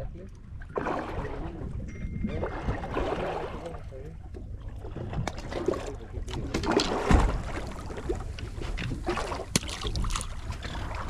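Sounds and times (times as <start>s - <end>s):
water slapping against boat hull: 0.0s - 11.0s
wind rumble on microphone: 0.0s - 11.0s.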